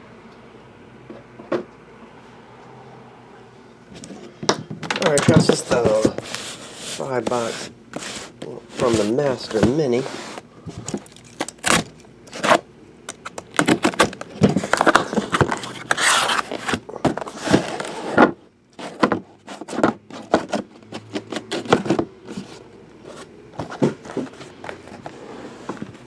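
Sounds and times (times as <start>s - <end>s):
cardboard rustling scrape: 5.3s - 11.1s, 13.6s - 26.0s
cardboard boxes knocking on table: 17.0s - 20.6s.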